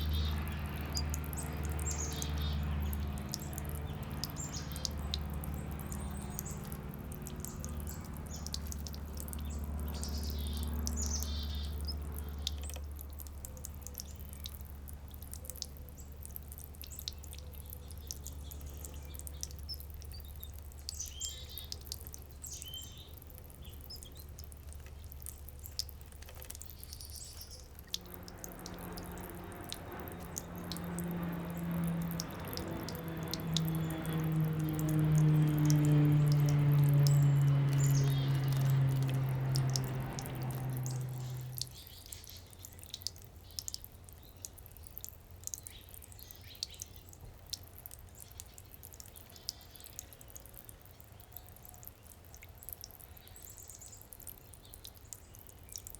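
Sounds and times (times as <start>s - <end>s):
fountain water dripping and splashing: 0.0s - 55.9s
small birds chirping: 0.0s - 55.9s
steady low hum: 27.7s - 41.8s
low droning tone: 27.8s - 41.8s.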